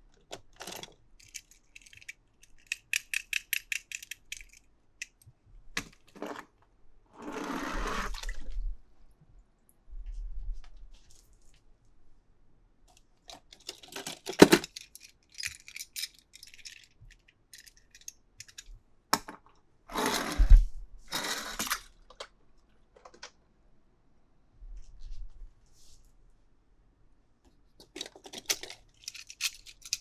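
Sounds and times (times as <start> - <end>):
plastic clicks and rattles: 0.1 - 6.2, 12.9 - 19.4, 23.0 - 23.4, 27.8 - 30.0.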